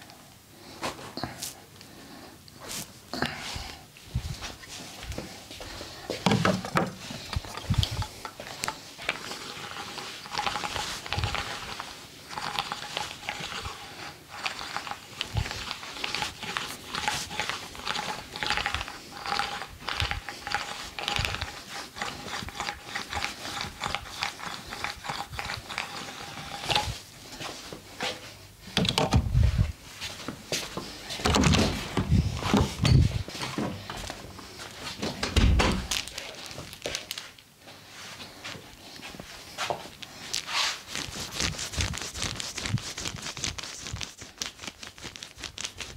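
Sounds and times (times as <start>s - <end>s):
hands rubbing and tapping skin: 39.7s - 45.9s.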